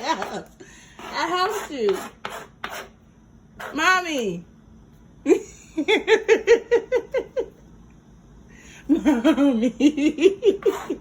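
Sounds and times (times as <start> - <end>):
person laughing: 5.3 - 7.6, 8.9 - 11.0.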